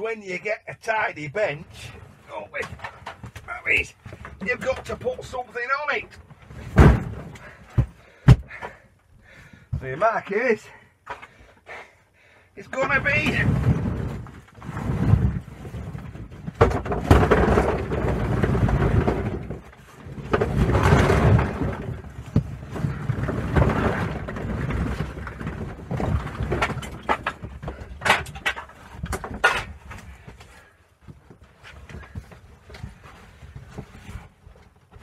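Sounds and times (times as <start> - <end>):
handling rustling and rumbling: 0.0 - 11.6, 12.6 - 35.0.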